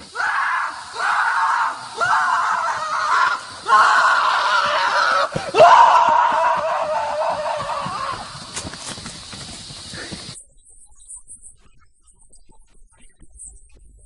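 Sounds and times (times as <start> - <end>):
drawn-out screaming cries: 0.0 - 9.0.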